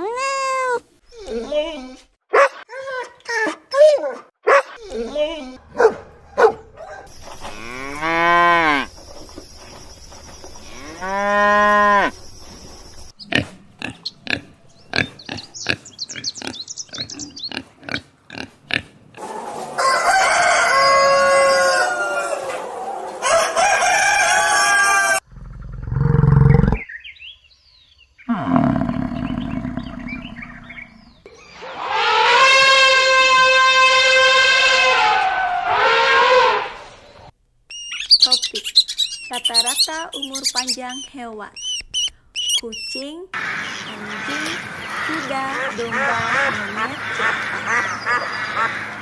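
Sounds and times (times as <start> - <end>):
deep low animal sound: 25.3 - 26.8, 28.3 - 31.2
falling animal calls: 28.3 - 49.0
long full animal calls: 31.6 - 37.0.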